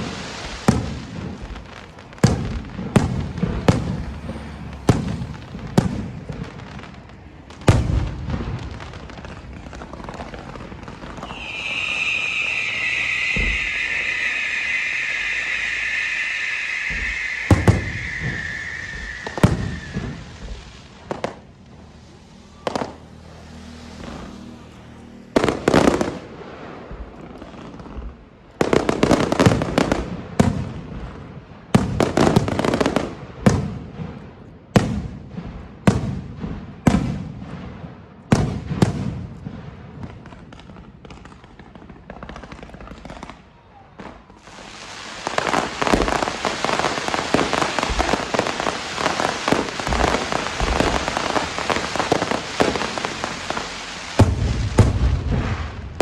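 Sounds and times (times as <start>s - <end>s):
fireworks bursting with bangs: 0.0s - 56.0s
high hiss: 11.2s - 21.1s, 44.5s - 54.2s.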